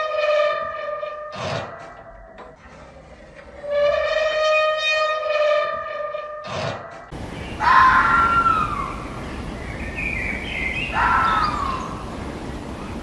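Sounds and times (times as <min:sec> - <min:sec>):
steady background noise: 0:07.1 - 0:13.0
pitched animal calls: 0:07.2 - 0:12.2.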